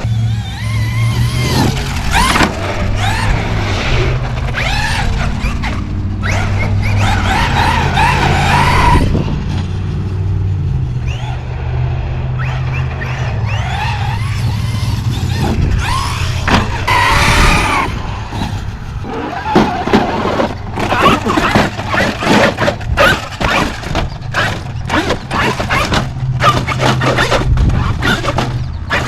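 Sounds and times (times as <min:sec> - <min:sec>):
electric motors whining: 0:00.0 - 0:29.0.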